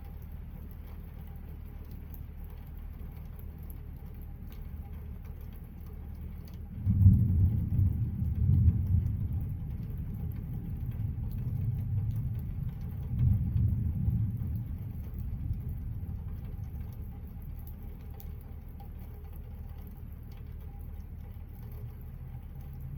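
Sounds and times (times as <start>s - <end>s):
thunder rumbling: 6.8s - 17.5s.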